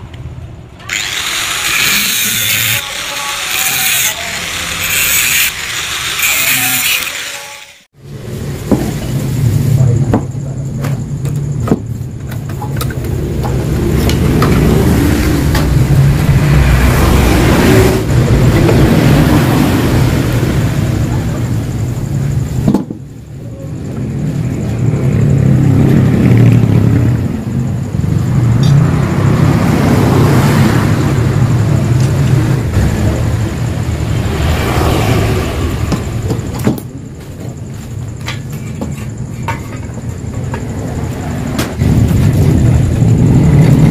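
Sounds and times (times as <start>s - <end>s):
motorcycle engine revving: 24.8s - 36.4s.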